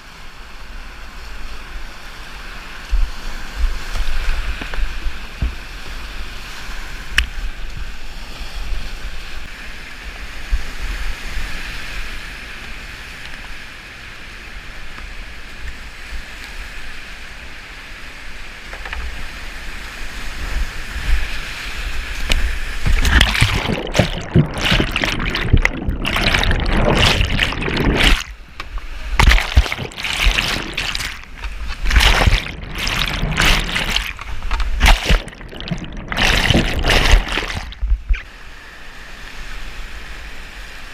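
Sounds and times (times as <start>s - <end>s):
water splashing and gurgling: 22.2s - 38.3s
river rushing: 22.6s - 37.8s.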